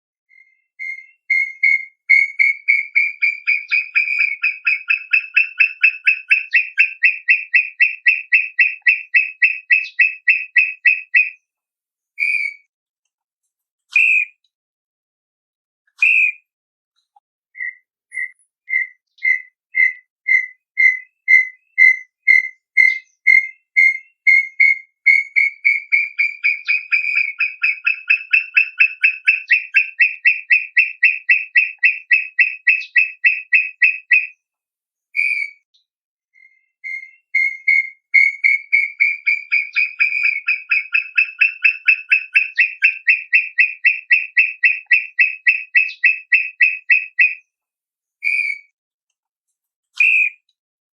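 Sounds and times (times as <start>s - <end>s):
bird whistling accelerating notes: 0.3s - 11.3s, 12.2s - 12.6s, 17.6s - 34.3s, 36.4s - 47.4s, 48.2s - 48.7s.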